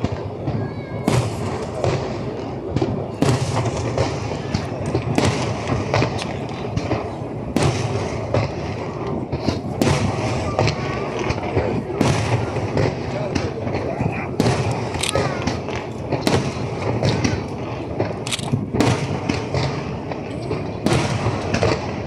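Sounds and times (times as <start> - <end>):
fireworks booming: 0.0 - 22.0
fireworks crackling: 0.0 - 22.0.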